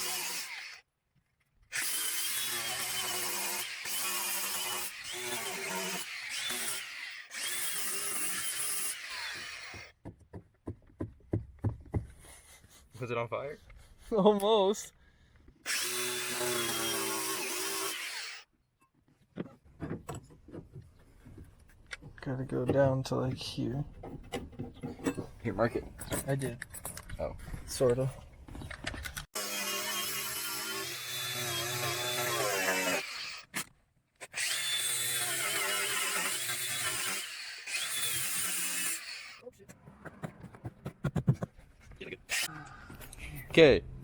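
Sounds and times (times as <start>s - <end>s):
handheld power tool running: 15.7s - 18.4s, 29.4s - 33.4s.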